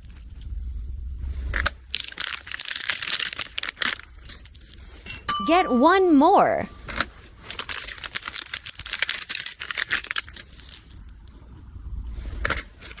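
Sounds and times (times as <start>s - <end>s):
plastic packaging crinkling: 1.9s - 4.8s, 7.5s - 11.1s.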